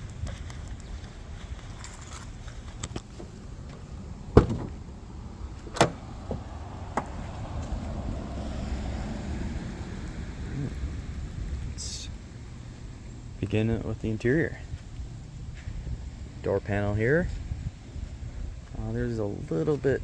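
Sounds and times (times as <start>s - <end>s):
low steady rumble: 0.0s - 20.0s
car door clunk: 3.2s - 4.9s, 5.6s - 7.2s
car door latch clicks: 4.4s - 4.8s, 5.6s - 7.1s.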